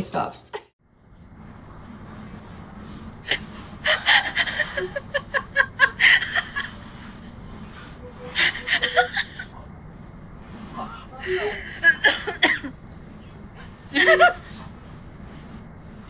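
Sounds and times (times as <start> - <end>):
person laughing: 3.3 - 6.9, 8.3 - 9.5, 11.2 - 12.7, 13.9 - 14.5.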